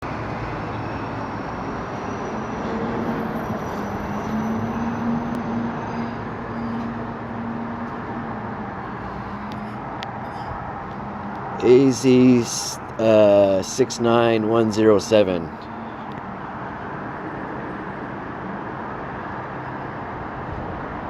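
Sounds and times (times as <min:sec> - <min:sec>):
engine-like hum: 0:00.0 - 0:21.0.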